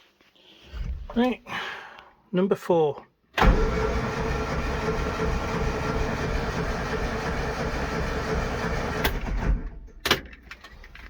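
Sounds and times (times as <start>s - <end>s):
engine cranking on starter motor: 3.4s - 10.9s.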